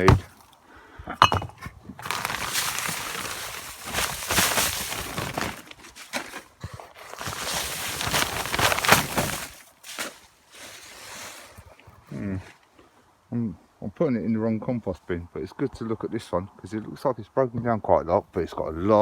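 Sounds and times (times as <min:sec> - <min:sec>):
garden waste rustling and scraping: 0:00.0 - 0:00.4, 0:01.2 - 0:12.7.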